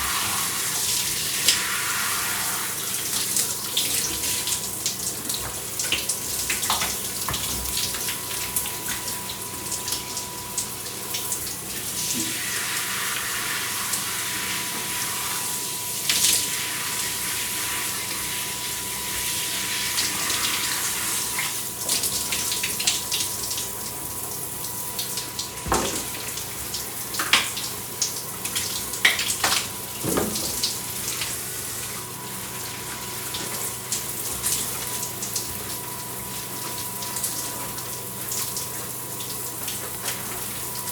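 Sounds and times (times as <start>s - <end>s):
shower water spraying: 0.0s - 40.9s
splashes and knocks: 25.6s - 26.2s, 29.4s - 30.6s.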